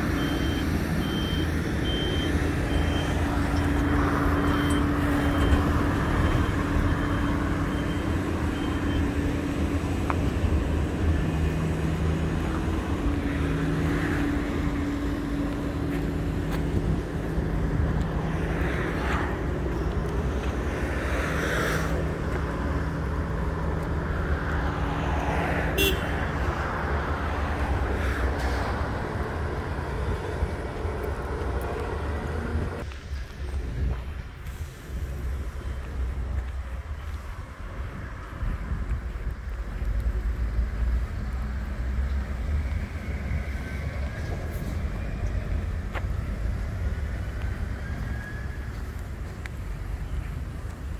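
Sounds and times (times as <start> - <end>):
heavy diesel engines running: 0.0 - 50.9
reversing beeper: 0.1 - 9.3.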